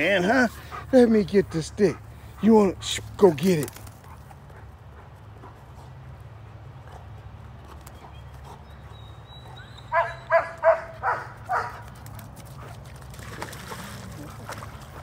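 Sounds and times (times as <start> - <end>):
dog barking: 9.9 - 11.8.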